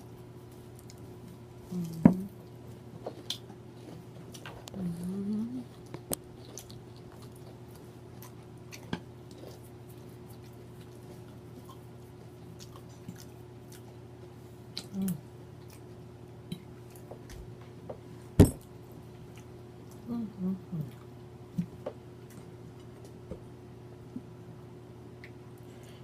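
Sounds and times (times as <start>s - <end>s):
steady low hum: 0.0s - 26.0s
chewing and mouth smacking: 0.4s - 5.0s, 5.6s - 14.0s, 14.7s - 17.4s.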